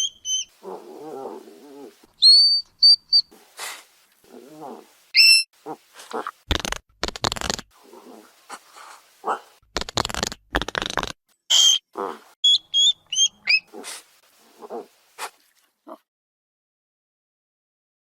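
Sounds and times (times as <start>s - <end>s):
hedgehog squeaking: 0.0s - 0.8s, 2.2s - 3.3s, 5.2s - 5.6s, 9.8s - 13.9s
hedgehog puffing: 0.0s - 12.4s, 13.1s - 15.4s
hedgehog grunting: 11.9s - 12.4s.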